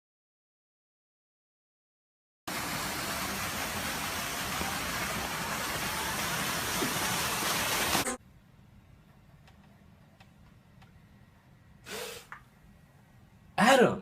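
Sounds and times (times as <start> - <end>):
steady rushing hiss: 2.5 - 8.2, 11.8 - 12.5.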